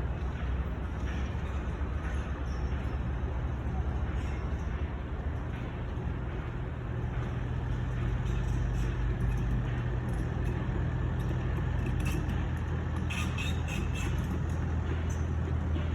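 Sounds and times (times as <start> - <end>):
short high squeaks: 13.0 - 14.3.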